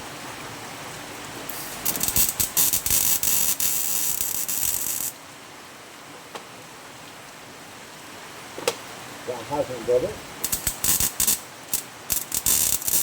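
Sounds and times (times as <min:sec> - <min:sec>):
welding arc crackling: 0:01.5 - 0:05.1, 0:10.4 - 0:13.0.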